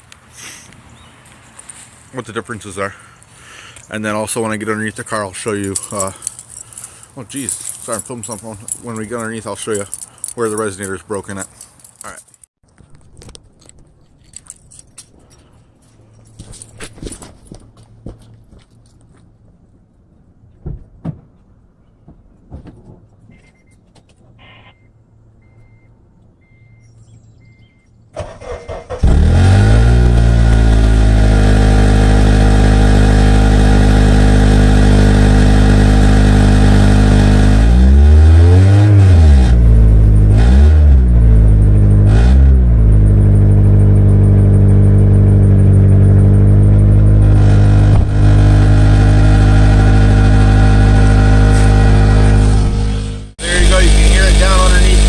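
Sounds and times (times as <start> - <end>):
faint repeating beep: 23.3 - 23.8, 24.4 - 28.0
car engine cranking and starting: 28.1 - 55.0
engine idling loudly and revving: 29.1 - 55.0.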